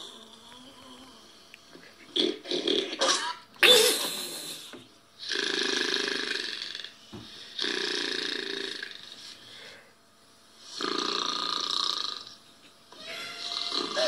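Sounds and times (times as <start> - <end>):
man snoring: 5.2 - 6.9, 7.5 - 9.2, 10.6 - 12.3, 13.4 - 14.0.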